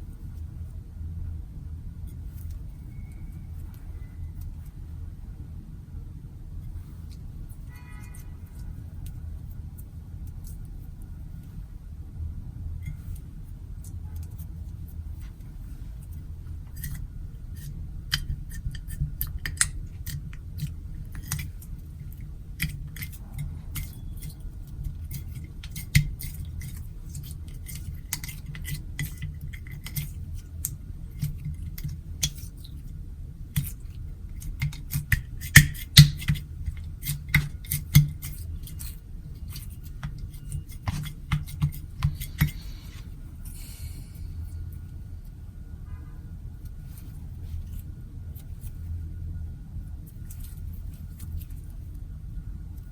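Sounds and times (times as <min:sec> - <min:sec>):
steady low hum: 0:00.0 - 0:52.9
slime clicking and popping: 0:34.4 - 0:38.9.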